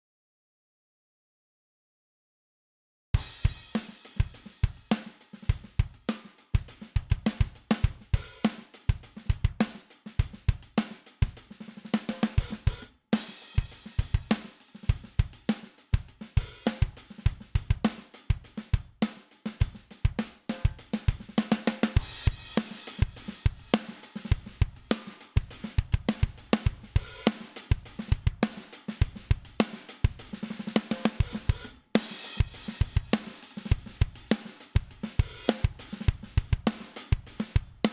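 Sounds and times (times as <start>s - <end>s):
drum kit groove: 3.2s - 37.9s.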